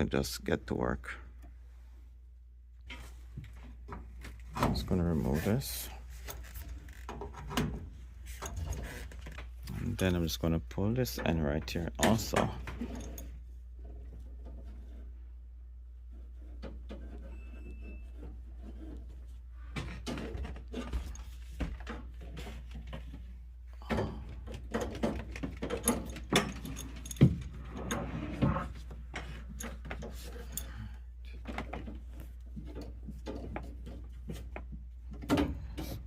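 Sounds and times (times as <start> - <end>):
tools clicking and rattling on pipe: 10.9 - 15.0, 19.8 - 36.0.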